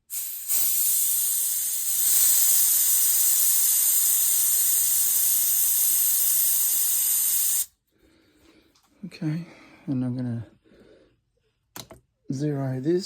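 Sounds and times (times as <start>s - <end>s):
gas hissing out of a fitting: 0.0s - 7.7s.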